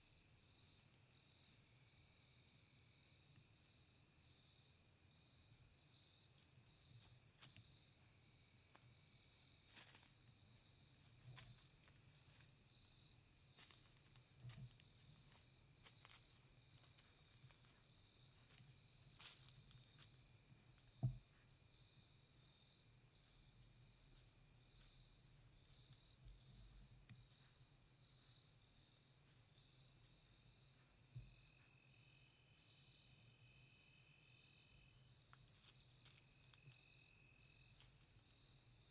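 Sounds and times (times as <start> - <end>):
faint ticks: 35.3 - 36.9.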